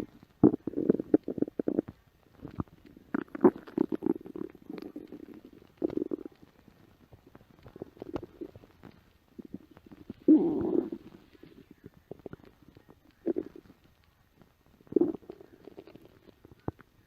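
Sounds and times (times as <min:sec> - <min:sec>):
stomach growling and gurgling: 0:00.0 - 0:17.0.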